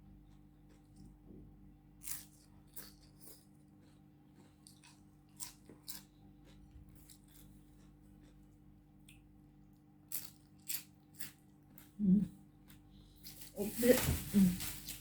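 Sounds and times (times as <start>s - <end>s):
crunchy food chewing: 0.0s - 12.0s.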